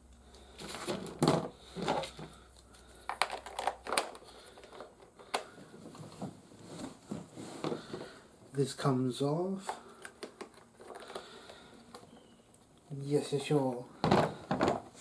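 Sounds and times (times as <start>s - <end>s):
rustling: 0.3s - 8.2s.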